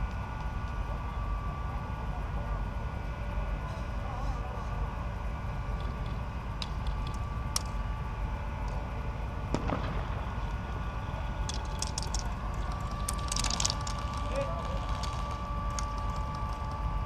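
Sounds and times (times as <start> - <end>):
low rumble: 0.0 - 17.0
airsoft guns firing: 9.5 - 10.3.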